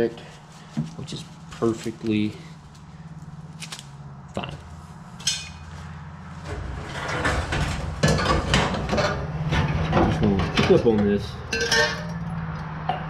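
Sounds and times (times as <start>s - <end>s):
sheet metal clanking and scraping: 5.2s - 13.0s.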